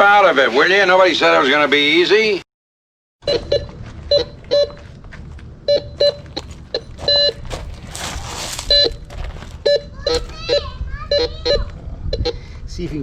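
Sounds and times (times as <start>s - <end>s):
metal detector beeps: 3.3s - 4.8s, 5.7s - 7.5s, 8.6s - 12.4s.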